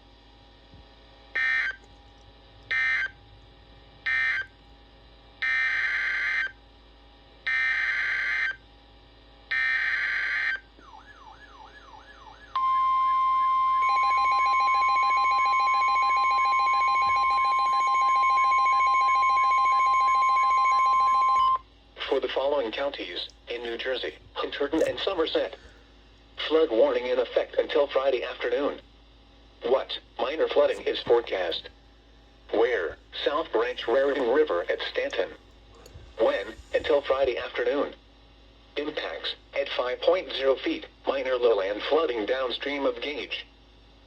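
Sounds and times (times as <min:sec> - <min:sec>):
steady warning alarm tone: 0:01.3 - 0:01.9, 0:02.7 - 0:03.3, 0:04.0 - 0:04.6, 0:05.4 - 0:06.6, 0:07.4 - 0:08.6, 0:09.5 - 0:22.4.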